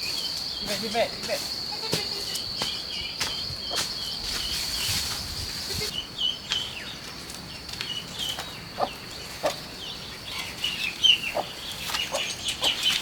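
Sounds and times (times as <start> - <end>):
chickens peeping and clucking: 8.3 - 9.7, 10.3 - 13.0.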